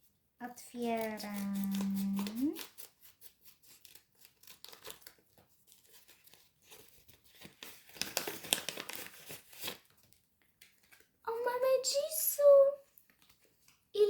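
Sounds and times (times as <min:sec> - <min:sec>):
wrapper tearing and crinkling: 0:00.8 - 0:10.2.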